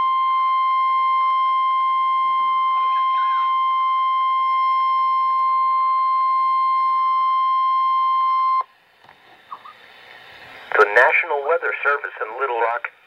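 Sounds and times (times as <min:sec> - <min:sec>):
steady high-pitched alarm tone: 0:00.0 - 0:08.6.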